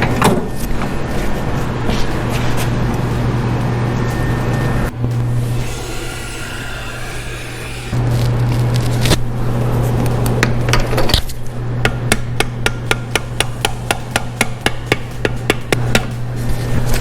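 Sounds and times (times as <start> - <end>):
low hum: 0.8 - 10.4
hammer tapping on metal tool: 11.8 - 16.2.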